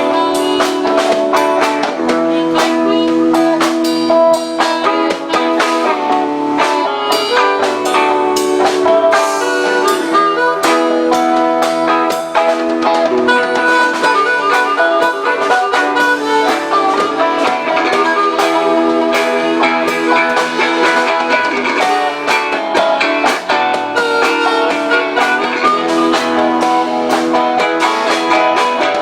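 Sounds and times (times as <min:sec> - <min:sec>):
guitar: 0:00.0 - 0:29.0
drum kit hits: 0:10.7 - 0:29.0.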